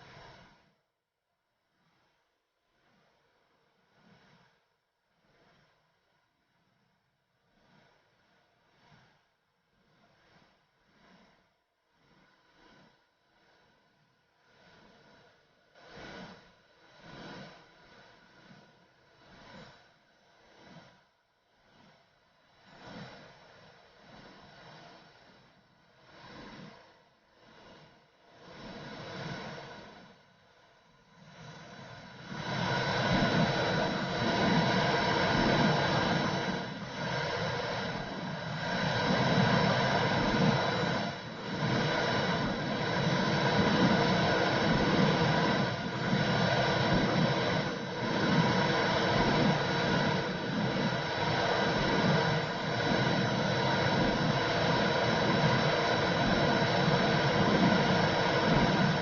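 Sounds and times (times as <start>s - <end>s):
steady whooshing womb noise: 0.0s - 0.9s, 1.6s - 59.0s.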